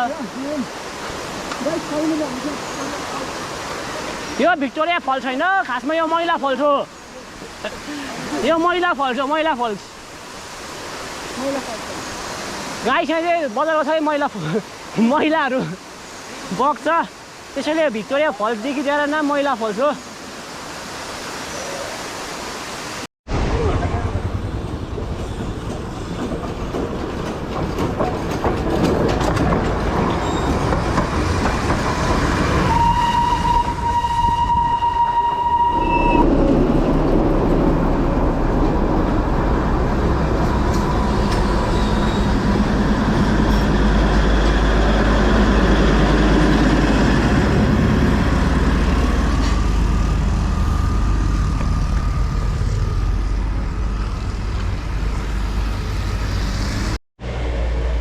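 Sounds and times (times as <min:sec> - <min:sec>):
train rumbling past: 0:23.3 - 0:58.0
train horn: 0:32.7 - 0:36.3.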